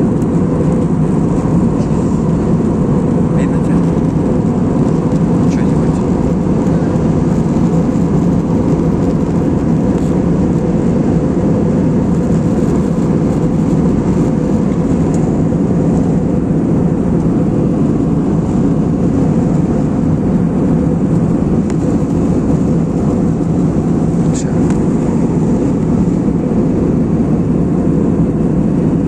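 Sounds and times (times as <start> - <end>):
airliner cabin drone: 0.0 - 29.0.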